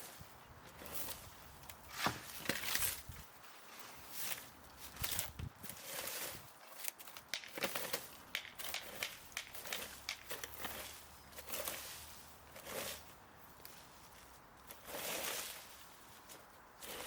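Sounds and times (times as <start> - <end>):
dry leaves and twigs rustling: 0.0 - 17.0
twigs snapping: 6.6 - 11.8.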